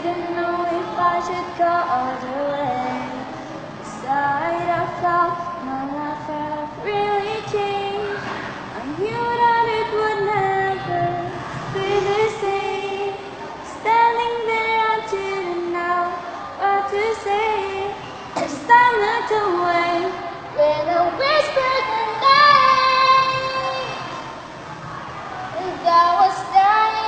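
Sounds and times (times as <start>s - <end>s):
faint backing music: 0.0s - 27.0s.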